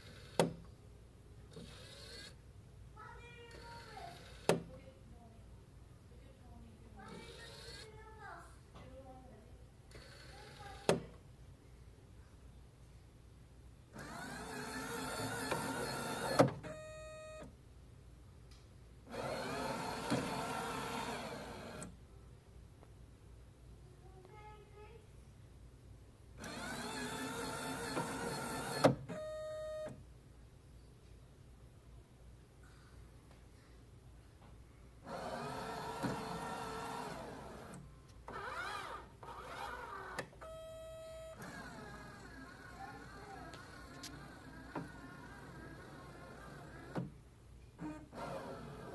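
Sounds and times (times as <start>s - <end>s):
machine mechanism whirring: 1.5s - 2.4s, 13.9s - 16.8s, 19.1s - 21.9s, 26.4s - 29.4s, 35.0s - 47.2s, 47.8s - 48.9s.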